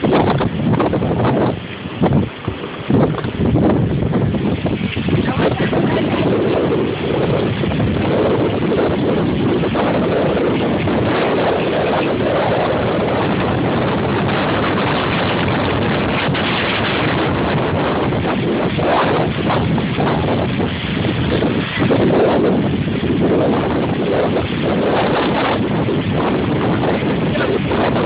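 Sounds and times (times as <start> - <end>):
strong wind buffeting microphone: 0.0 - 28.0.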